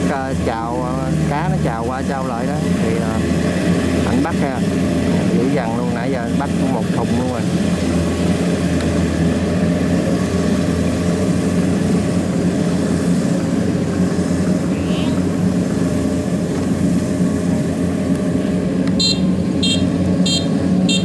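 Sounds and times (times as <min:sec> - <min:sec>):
combine harvester diesel drone: 0:00.0 - 0:21.0.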